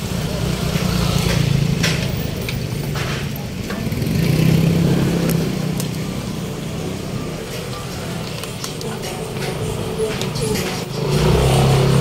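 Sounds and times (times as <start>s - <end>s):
traffic hum: 0.0s - 12.0s
vehicle engine passing: 3.8s - 8.5s, 9.1s - 12.0s.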